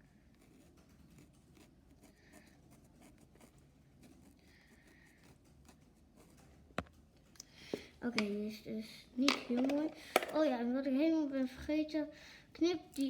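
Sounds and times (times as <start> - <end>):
marker scratching on sponge: 0.0 - 6.4.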